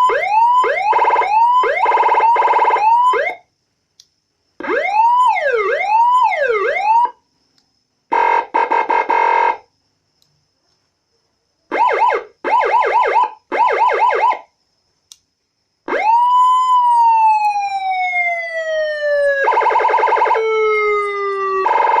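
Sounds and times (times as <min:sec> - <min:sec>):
electronic siren cycling tones: 0:00.0 - 0:03.4, 0:15.9 - 0:22.0.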